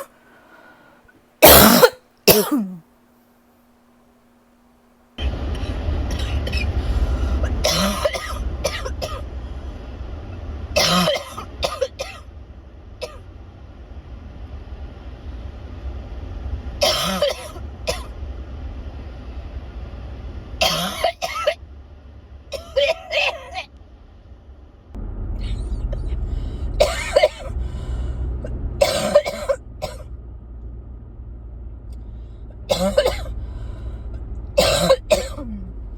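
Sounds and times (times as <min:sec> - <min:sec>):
person coughing: 0:01.4 - 0:02.8, 0:07.6 - 0:09.2, 0:10.8 - 0:12.2, 0:16.8 - 0:17.6, 0:20.6 - 0:21.6, 0:22.6 - 0:23.7, 0:26.8 - 0:27.5, 0:28.8 - 0:30.0, 0:32.7 - 0:33.3, 0:34.6 - 0:35.7
steady low rumble: 0:04.6 - 0:35.9.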